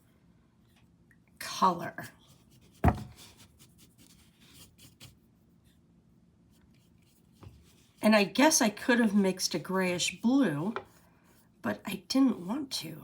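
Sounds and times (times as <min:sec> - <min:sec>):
paintbrush scratching on canvas: 0:02.0 - 0:05.7, 0:06.5 - 0:11.6
knock: 0:02.8 - 0:03.2.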